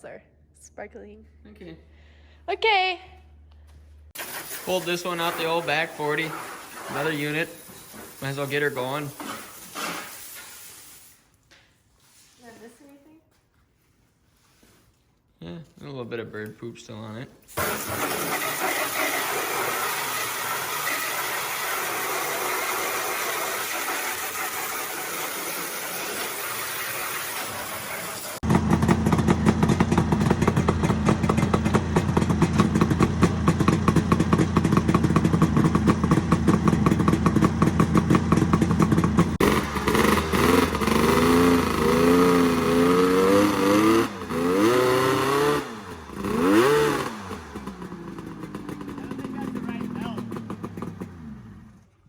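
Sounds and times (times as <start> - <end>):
steady hissing noise: 4.2 - 11.4
snowmobile engine running and revving: 17.6 - 51.8.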